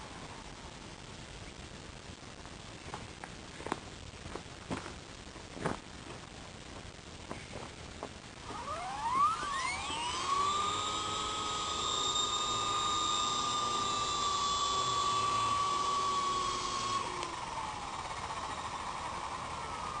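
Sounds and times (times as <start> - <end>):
rc helicopter motor whining: 8.4 - 20.0.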